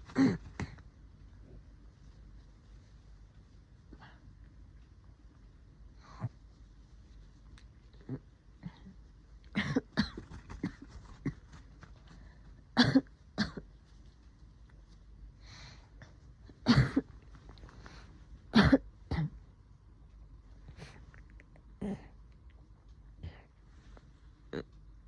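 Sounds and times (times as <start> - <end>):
woman coughing wetly: 9.5 - 11.4, 12.8 - 13.6, 16.6 - 17.1, 18.5 - 19.4.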